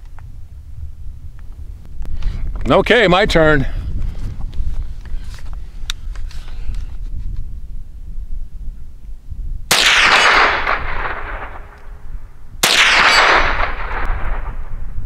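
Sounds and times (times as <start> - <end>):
rifle shots with echo: 9.7 - 15.0.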